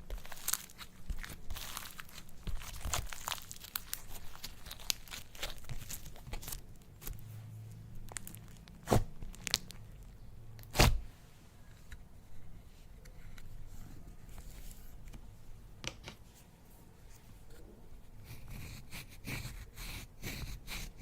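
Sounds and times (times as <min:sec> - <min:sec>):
slime popping: 0:00.1 - 0:06.6.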